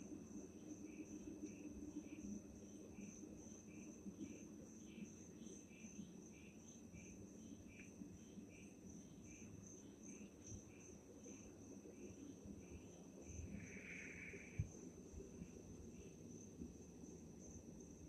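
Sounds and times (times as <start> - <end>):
faint low hum: 0.0 - 18.0
lower insect chirp: 0.0 - 18.0.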